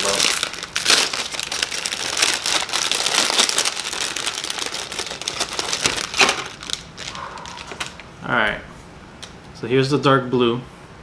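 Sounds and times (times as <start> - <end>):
plastic bags crinkling: 0.0 - 8.1.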